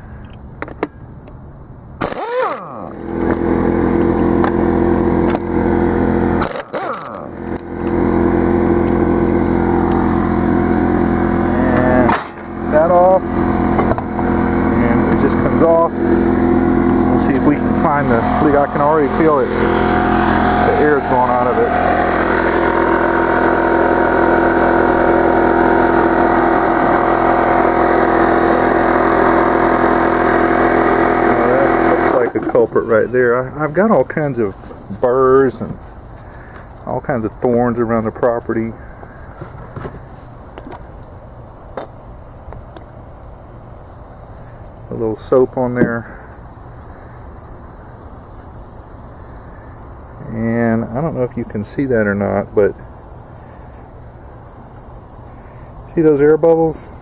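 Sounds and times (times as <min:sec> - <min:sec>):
power tool motor: 0:02.0 - 0:32.6.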